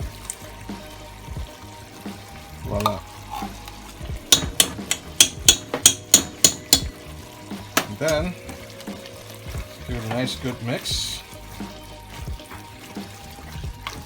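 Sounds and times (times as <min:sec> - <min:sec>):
faint steady sizzle: 0:00.0 - 0:14.0
utensil stirring a pan: 0:00.0 - 0:14.0
sharp knocks against pan: 0:04.3 - 0:07.0, 0:07.7 - 0:08.6.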